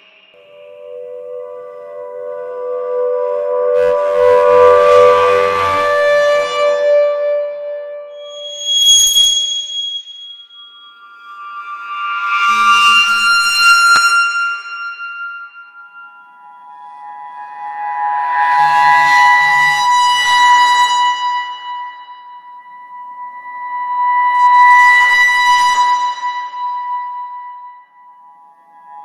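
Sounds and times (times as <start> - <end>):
high ringing tones: 8.2 - 13.3.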